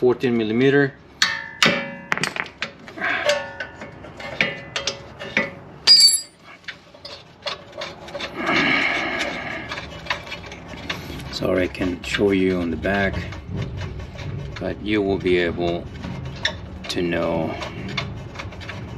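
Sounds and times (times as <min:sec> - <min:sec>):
sharp ringing clink: 0:05.9 - 0:06.4
steel tools clinking and rattling: 0:05.9 - 0:06.4.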